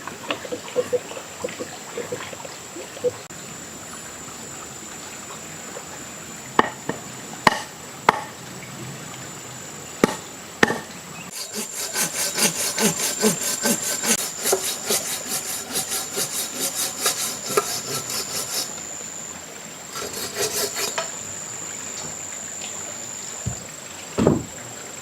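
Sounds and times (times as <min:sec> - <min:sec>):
hand saw sawing: 0:11.3 - 0:19.3, 0:19.9 - 0:22.3.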